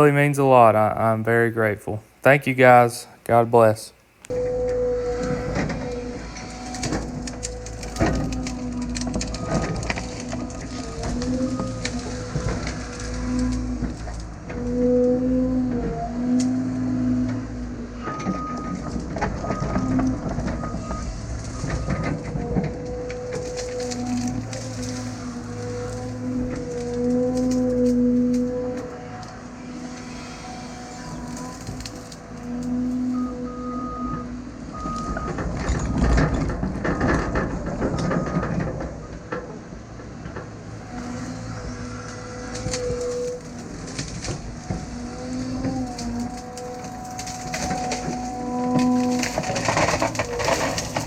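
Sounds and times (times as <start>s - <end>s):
diesel engine rumble: 0.0s - 51.0s
machine clanking and rattling: 4.3s - 15.0s, 15.6s - 51.0s
short squeals: 4.3s - 39.1s, 40.6s - 51.0s
reversing alarm beeps: 18.0s - 22.2s, 33.0s - 36.2s.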